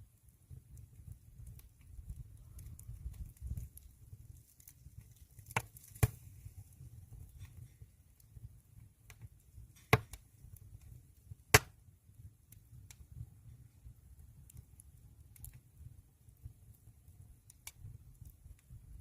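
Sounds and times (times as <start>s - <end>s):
low rumble of flames: 0.0s - 19.0s
wood popping loudly: 5.4s - 6.3s, 11.5s - 11.7s.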